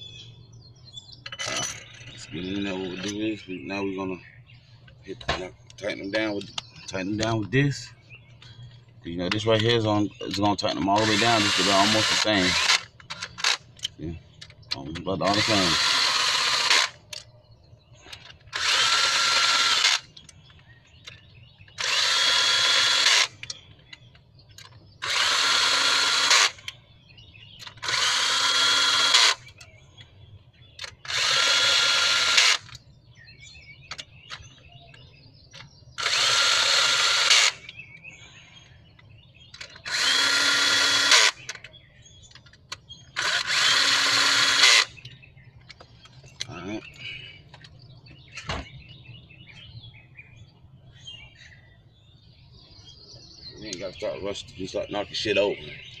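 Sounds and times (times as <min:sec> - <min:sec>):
power drill driving bolts: 0:10.3 - 0:13.6, 0:15.1 - 0:17.0, 0:18.1 - 0:20.2, 0:21.7 - 0:23.5, 0:24.6 - 0:26.7, 0:27.6 - 0:29.5, 0:30.8 - 0:32.8, 0:36.0 - 0:37.7, 0:39.5 - 0:41.6, 0:43.2 - 0:44.9.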